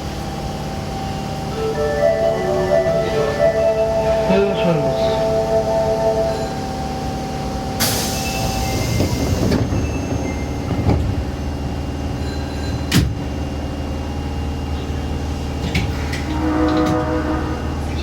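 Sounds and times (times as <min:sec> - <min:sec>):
subway train running rumble: 0:00.0 - 0:18.0
air hiss of sliding doors: 0:07.8 - 0:09.4.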